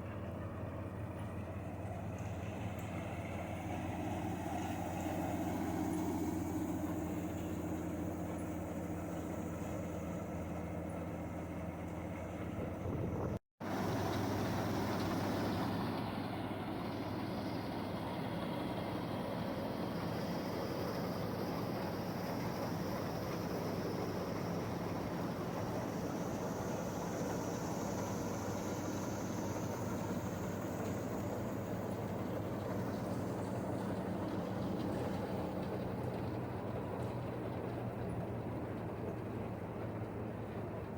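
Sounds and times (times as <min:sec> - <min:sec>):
combine harvester engine running: 0:00.0 - 0:40.9
faint high whine rising: 0:12.9 - 0:35.8.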